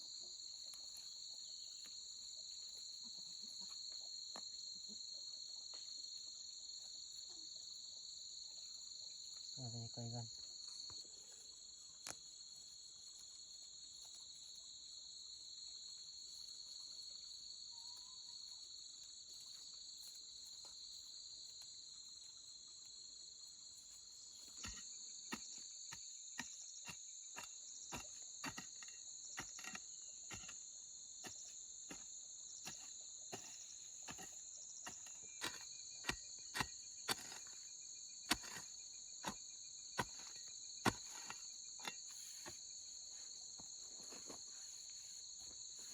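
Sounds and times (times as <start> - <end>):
insect chorus: 0.0 - 45.9.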